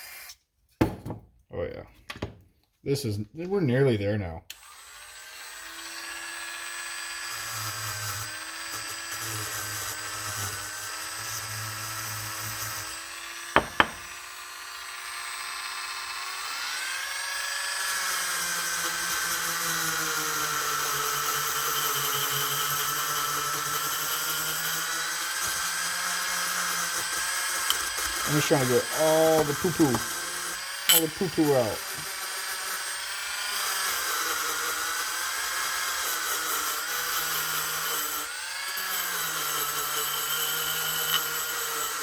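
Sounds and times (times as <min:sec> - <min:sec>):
wire wheel tool whining: 0:19.9 - 0:42.0.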